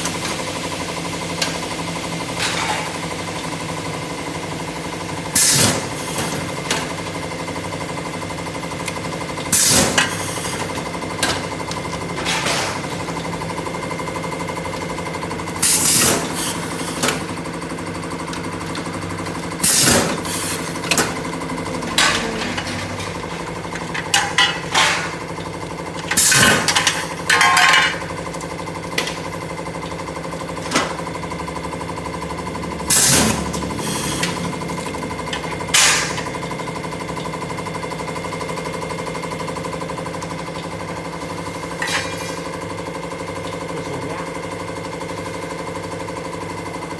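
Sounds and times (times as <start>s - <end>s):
machine humming: 8.2s - 37.9s
metal scraping: 19.6s - 25.4s.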